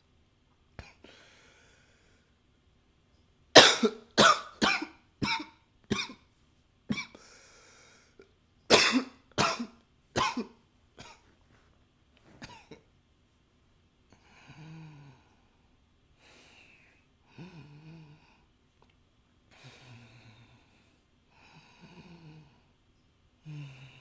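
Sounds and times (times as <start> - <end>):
man coughing: 3.6 - 6.2, 8.7 - 11.2.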